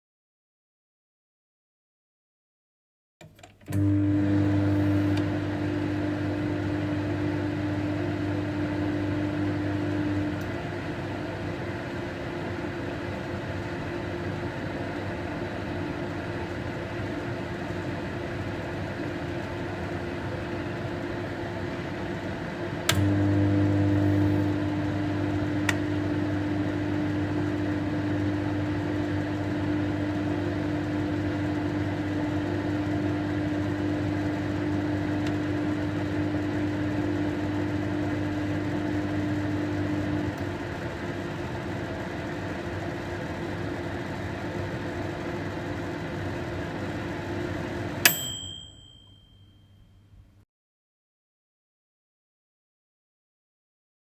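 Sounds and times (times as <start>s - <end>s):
microwave click: 3.2s - 5.5s, 22.8s - 23.3s, 25.5s - 26.2s, 47.8s - 49.2s
microwave oven humming: 3.2s - 50.4s
microwave bell ding: 48.0s - 50.0s.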